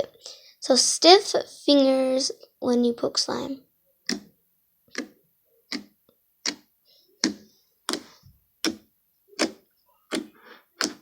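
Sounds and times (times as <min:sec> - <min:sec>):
fingers poking wet slime: 0:04.0 - 0:04.3, 0:04.9 - 0:11.0.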